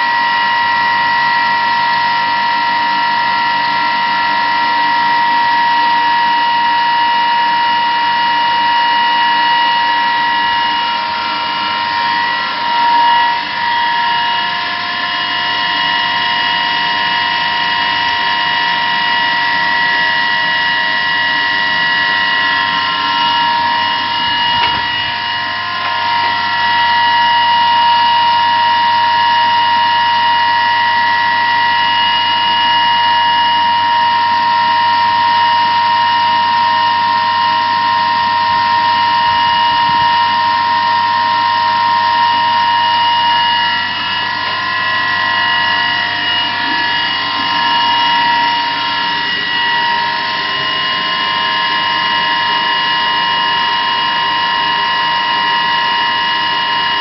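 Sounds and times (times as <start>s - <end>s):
electric motor whining: 9.2s - 28.3s, 41.2s - 53.0s.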